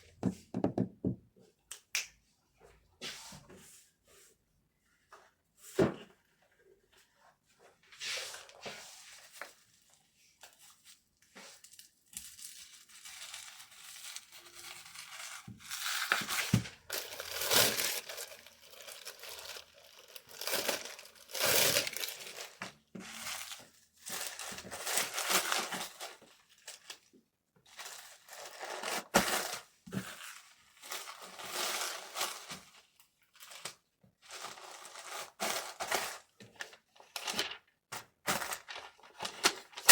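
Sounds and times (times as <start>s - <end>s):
packing materials crinkling and tearing: 10.4s - 27.1s, 27.7s - 39.9s.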